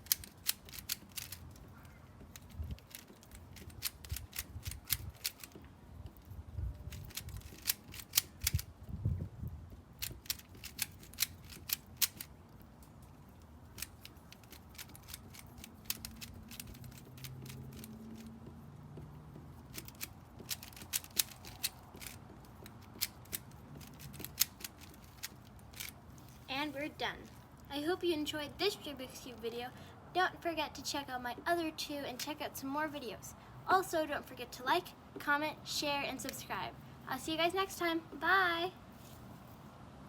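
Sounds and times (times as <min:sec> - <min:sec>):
puzzle cube layers clicking: 0:00.0 - 0:01.6, 0:02.3 - 0:05.6, 0:06.9 - 0:08.7, 0:10.0 - 0:12.4, 0:13.7 - 0:18.3, 0:19.6 - 0:26.0.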